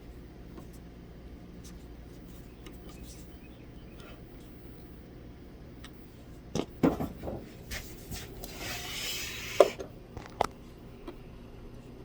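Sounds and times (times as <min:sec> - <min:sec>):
screwdriver scraping rub: 0:07.7 - 0:09.8.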